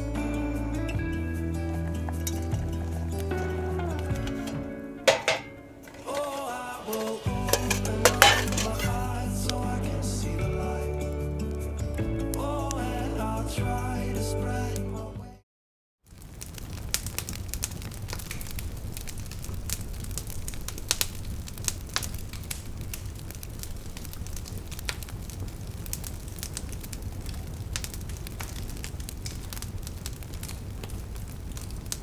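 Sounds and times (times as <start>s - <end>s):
campfire crackling: 0.0s - 13.4s, 16.1s - 32.0s
low fire rumble: 0.0s - 14.0s, 16.1s - 32.0s.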